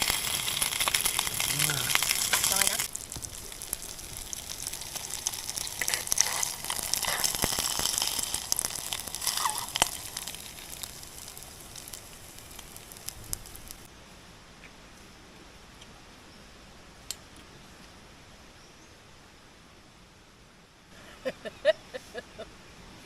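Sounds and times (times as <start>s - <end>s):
food sizzling in a pan: 0.0s - 13.9s.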